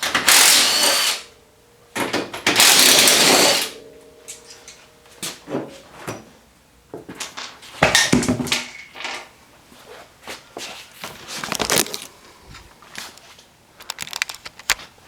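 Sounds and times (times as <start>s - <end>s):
wheel clunking and scraping: 1.9s - 9.3s.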